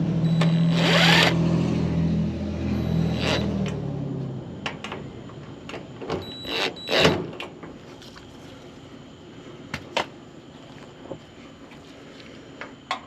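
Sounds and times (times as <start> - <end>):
motor hum: 0.0 - 7.0.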